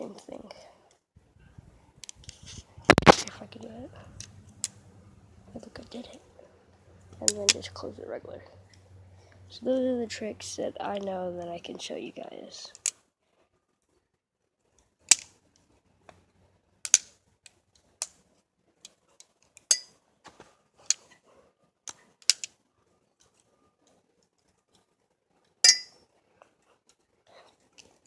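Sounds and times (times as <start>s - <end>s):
plastic clicks and clacks: 2.0s - 3.4s.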